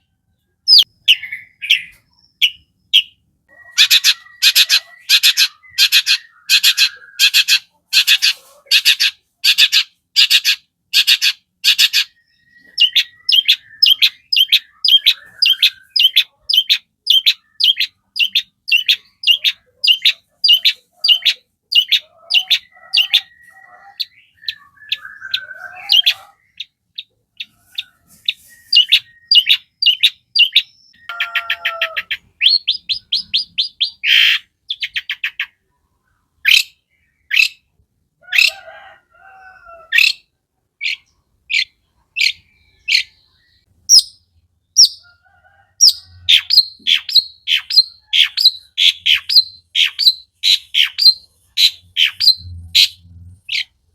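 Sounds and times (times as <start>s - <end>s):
bird singing chattering song: 0.0s - 37.7s, 39.9s - 45.1s, 45.8s - 53.8s.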